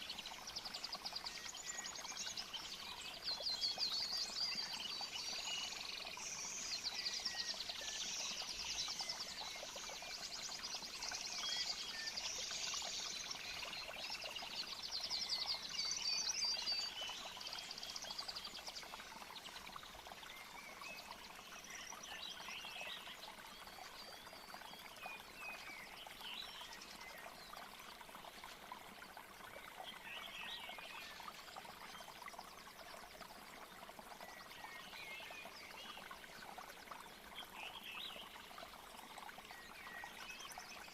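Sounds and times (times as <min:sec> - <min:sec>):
trickle of flowing water: 0:00.0 - 0:40.9.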